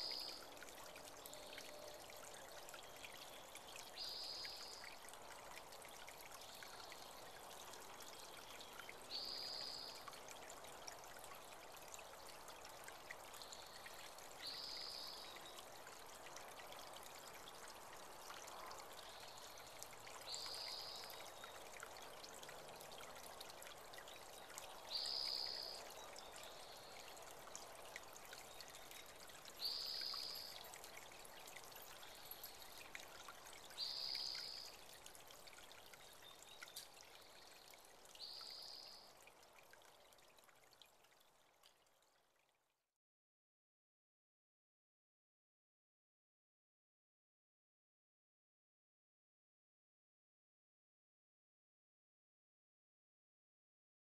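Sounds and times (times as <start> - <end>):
faint creek trickling: 0.0 - 42.9.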